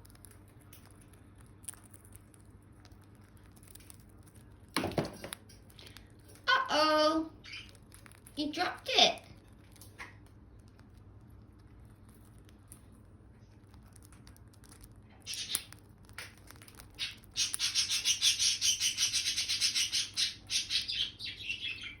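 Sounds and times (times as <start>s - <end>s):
parrot calling: 6.5s - 7.7s, 15.3s - 15.7s, 17.0s - 22.0s
parrot chattering: 6.5s - 7.8s, 15.3s - 15.7s, 17.0s - 22.0s.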